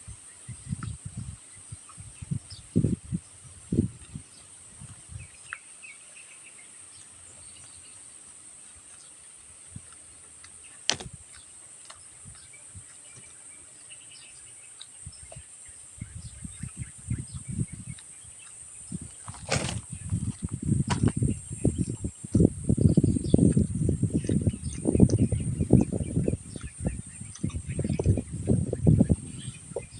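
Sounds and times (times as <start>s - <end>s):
insects chirring: 0.0s - 29.9s
soft low chewing: 0.2s - 19.4s, 20.0s - 29.9s
sharp click: 10.9s - 11.2s.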